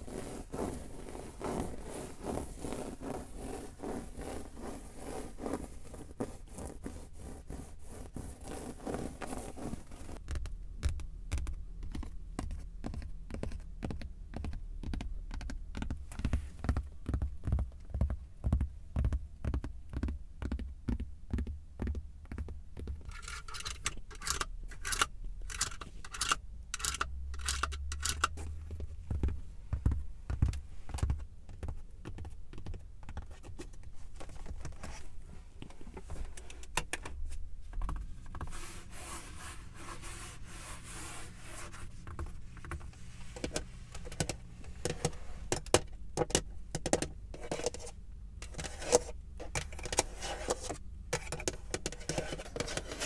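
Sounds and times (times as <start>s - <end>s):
scraping and rubbing: 0.0s - 10.3s, 23.0s - 28.9s, 37.3s - 53.0s.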